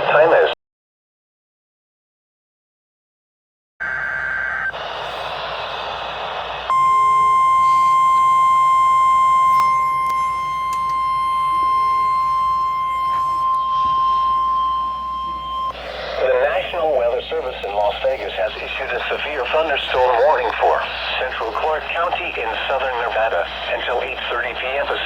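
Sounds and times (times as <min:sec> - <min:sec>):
steady alarm tone: 0:03.8 - 0:17.1.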